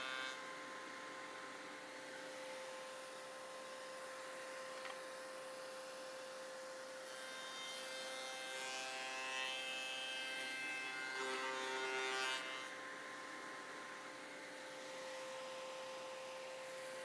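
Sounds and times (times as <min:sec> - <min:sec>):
machine cutting wood: 0:07.0 - 0:12.8.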